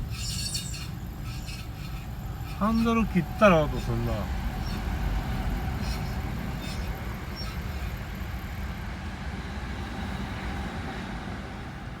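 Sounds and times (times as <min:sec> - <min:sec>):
car road rumble: 0:00.0 - 0:08.5.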